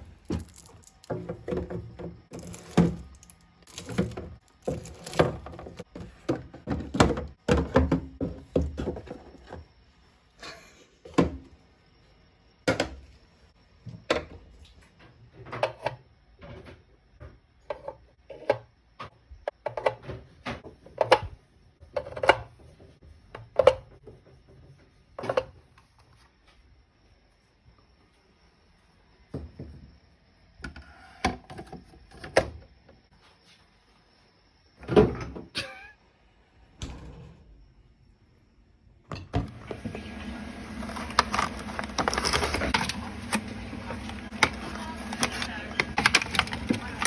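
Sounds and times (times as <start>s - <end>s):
kitchen items clattering: 0.0s - 9.7s, 39.1s - 47.0s
containers thunking on hard surfaces: 0.1s - 9.6s, 39.1s - 47.0s.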